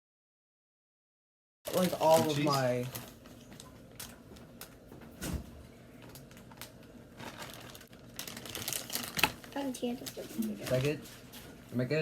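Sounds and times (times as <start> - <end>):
hands rustling food packaging: 1.7 - 4.9, 6.0 - 11.7.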